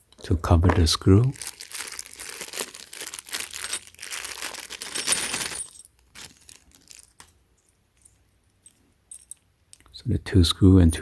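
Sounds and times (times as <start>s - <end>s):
metal screws clinking and rattling: 3.5s - 3.9s, 4.8s - 5.9s, 9.1s - 9.4s.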